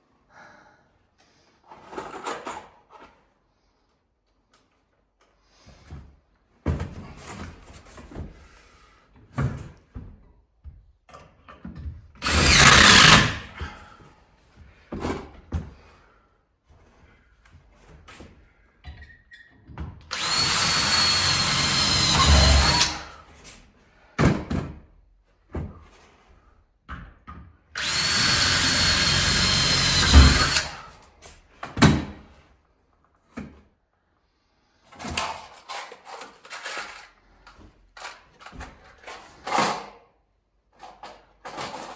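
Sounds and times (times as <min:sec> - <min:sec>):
power drill whining: 0:12.2 - 0:13.7, 0:20.1 - 0:23.2, 0:27.8 - 0:31.0.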